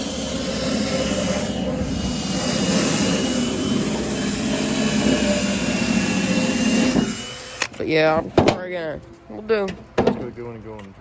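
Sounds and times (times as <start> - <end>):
thin high whine: 0.0 - 7.6
power tool motor running: 0.0 - 8.1.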